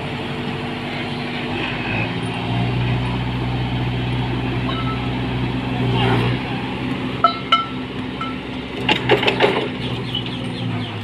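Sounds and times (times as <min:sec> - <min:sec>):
tractor engine running: 0:00.0 - 0:11.0
sharp metallic clinks: 0:04.6 - 0:05.1
rattle of metal clanks: 0:07.2 - 0:10.4.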